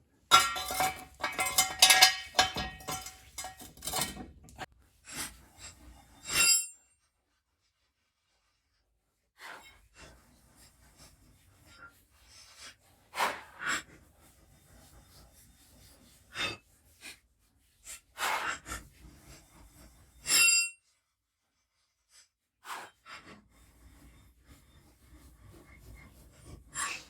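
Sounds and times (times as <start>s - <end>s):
tools and parts knocking and scraping: 0.2s - 4.7s.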